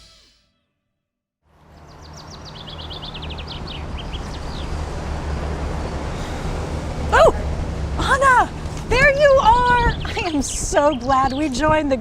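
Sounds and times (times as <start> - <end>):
low traffic rumble: 1.5 - 12.0
songbird chirping: 1.7 - 4.9.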